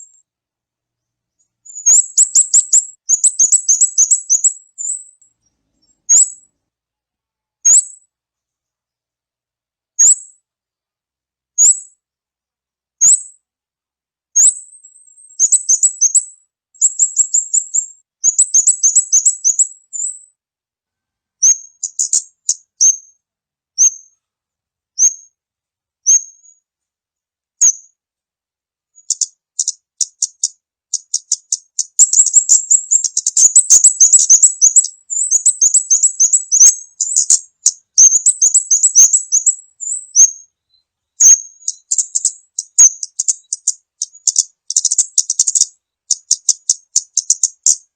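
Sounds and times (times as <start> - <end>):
high sharp bird chirps: 1.4 - 6.5, 7.7 - 8.0, 11.6 - 12.0, 13.0 - 13.4, 14.4 - 20.3, 21.4 - 23.2, 23.8 - 24.2, 25.0 - 25.4, 26.0 - 26.6, 29.0 - 47.9
rapid chattering bird notes: 1.8 - 4.5, 29.0 - 40.4, 41.2 - 47.9.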